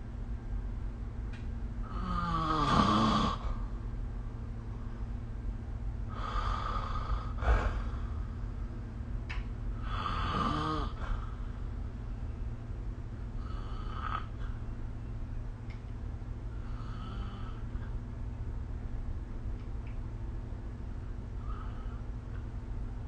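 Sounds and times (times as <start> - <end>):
steady low hum: 0.0 - 23.0
person snoring: 1.8 - 3.6, 6.1 - 8.1, 9.8 - 11.4, 13.4 - 14.3, 16.6 - 17.6.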